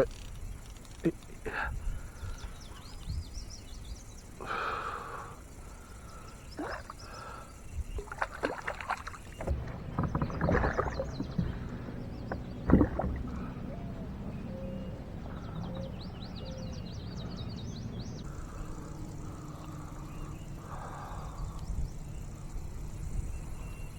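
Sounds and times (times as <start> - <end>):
small birds chirping: 0.0 - 23.9
water splashes: 6.5 - 13.7.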